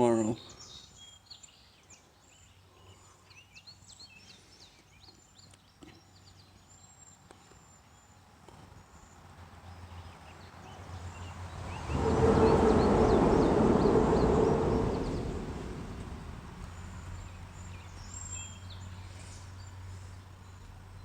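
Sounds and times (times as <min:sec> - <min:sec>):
vehicle crossing bridge overhead: 0:09.4 - 0:19.0.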